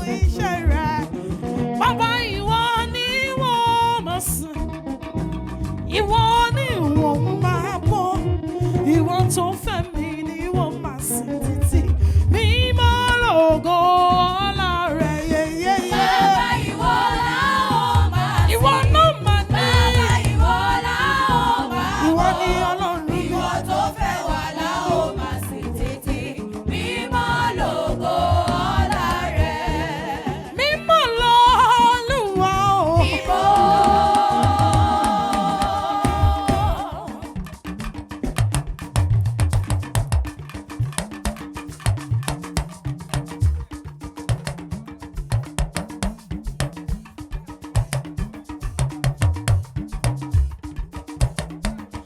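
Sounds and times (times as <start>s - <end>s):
person singing with wavering notes: 0.0s - 4.8s, 5.9s - 37.6s
drum beat: 15.6s - 30.5s, 33.0s - 37.2s, 38.3s - 43.7s, 47.8s - 51.8s
backing voices: 15.7s - 31.0s, 32.9s - 37.3s.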